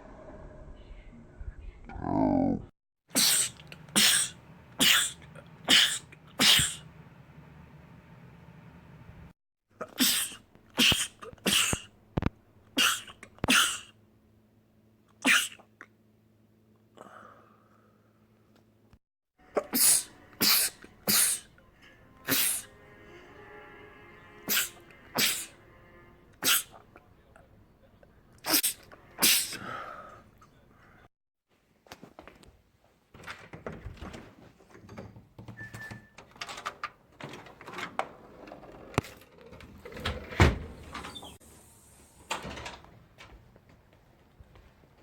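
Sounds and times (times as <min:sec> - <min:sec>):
man sneezing: 0:03.1 - 0:06.8, 0:09.8 - 0:11.8, 0:12.8 - 0:13.9, 0:15.2 - 0:15.7, 0:19.6 - 0:21.5, 0:22.3 - 0:22.7, 0:24.5 - 0:25.5, 0:26.4 - 0:26.8, 0:28.4 - 0:29.8.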